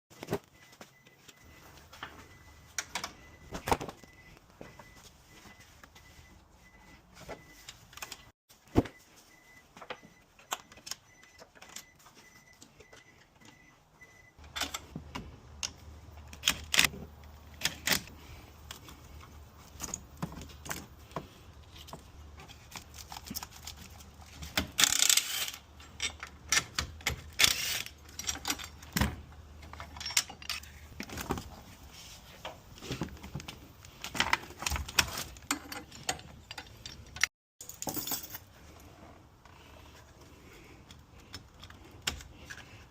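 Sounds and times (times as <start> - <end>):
faint steady beeping: 0.1 - 14.4
tools and metal hardware clinking: 9.8 - 31.5, 32.4 - 39.1.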